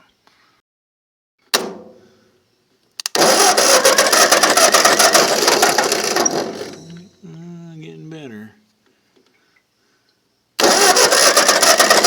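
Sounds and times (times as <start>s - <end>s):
sharp knock: 1.6s - 2.0s
quick clicks: 3.0s - 7.0s
engine cranking by starter: 3.0s - 7.2s, 10.6s - 12.0s.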